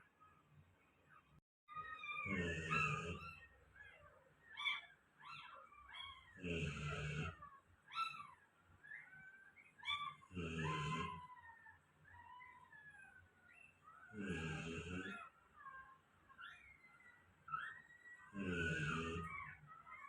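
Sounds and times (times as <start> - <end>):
dog snoring: 2.2 - 3.3, 6.4 - 7.5, 10.3 - 11.3, 14.1 - 15.2, 18.3 - 19.6.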